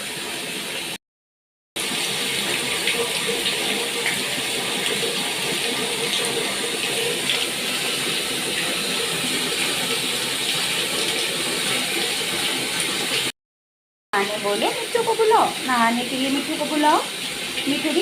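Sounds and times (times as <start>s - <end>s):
tap water running: 0.0s - 1.0s, 1.8s - 13.4s, 14.2s - 18.0s.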